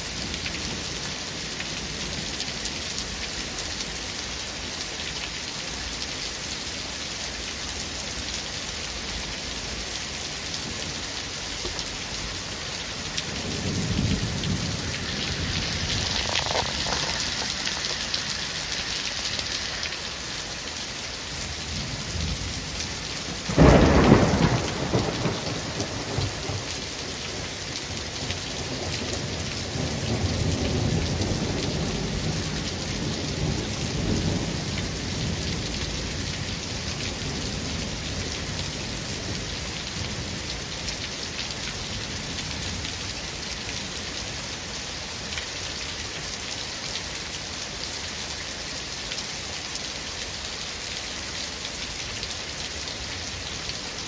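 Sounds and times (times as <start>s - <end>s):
steady rain falling: 0.0s - 54.0s
low rolling thunder: 13.2s - 18.7s, 21.7s - 36.3s
loud thunderclap: 23.5s - 26.7s.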